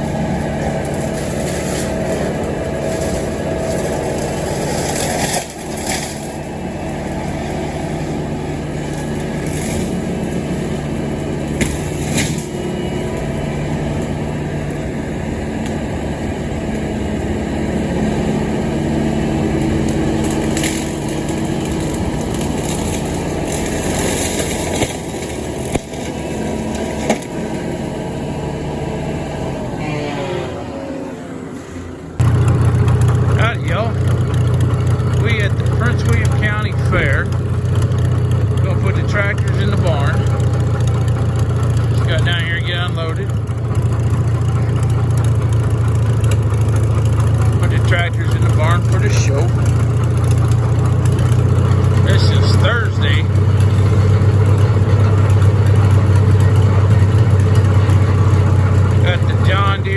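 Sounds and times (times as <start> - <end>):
engine running: 0.0 - 59.9.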